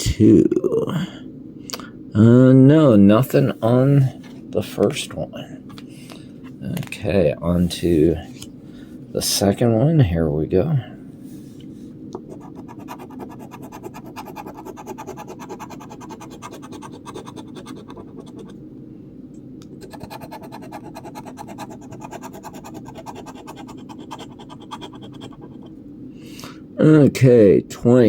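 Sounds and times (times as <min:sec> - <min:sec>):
scratching lottery ticket: 0:12.3 - 0:18.6, 0:19.8 - 0:25.7.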